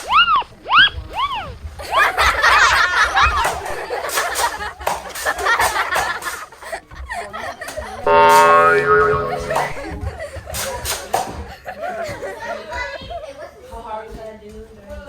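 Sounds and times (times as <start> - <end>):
loud steady held tone: 8.1 - 10.0.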